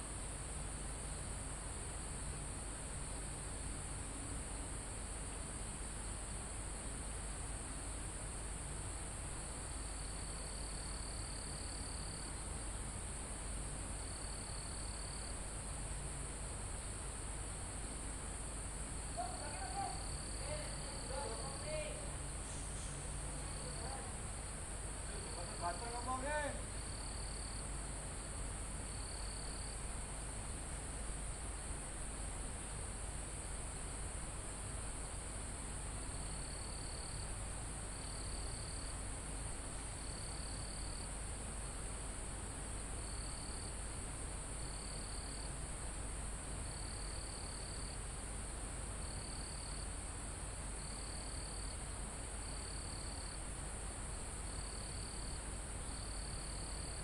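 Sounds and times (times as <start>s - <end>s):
insect chirping in short pulses: 9.6s - 13.0s, 14.0s - 15.5s, 18.9s - 27.7s, 28.8s - 30.4s, 36.0s - 39.0s, 39.9s - 41.2s, 43.0s - 43.8s, 44.6s - 45.6s, 46.6s - 48.0s, 49.0s - 49.9s, 50.8s - 53.4s, 54.5s - 57.0s
insects trilling: 9.6s - 13.0s, 14.0s - 15.5s, 18.4s - 30.6s, 35.9s - 39.0s, 39.9s - 41.2s, 43.0s - 43.9s, 44.6s - 45.6s, 46.6s - 48.0s, 49.0s - 49.9s, 50.8s - 53.5s, 54.5s - 57.0s.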